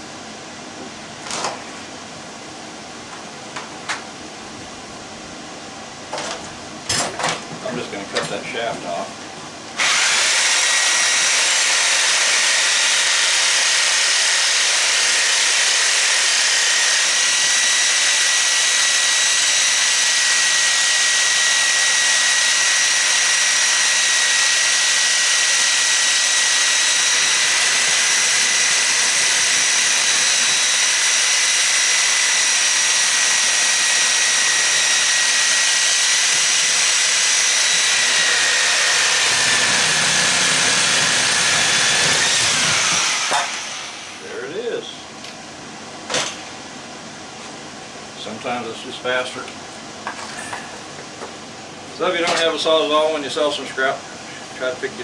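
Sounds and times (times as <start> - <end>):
power tool cutting metal: 9.8 - 44.3.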